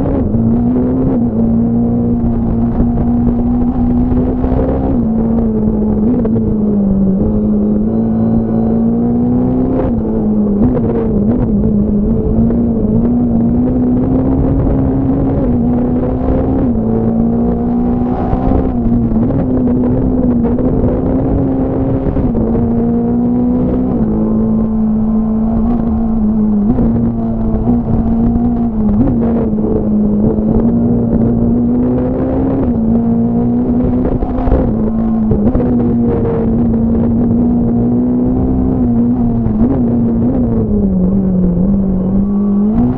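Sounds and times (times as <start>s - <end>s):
rally car engine at high revs: 0.0s - 42.9s.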